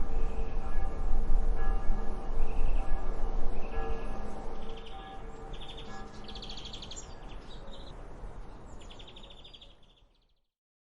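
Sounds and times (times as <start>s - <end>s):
songbirds trilling: 4.6s - 10.3s.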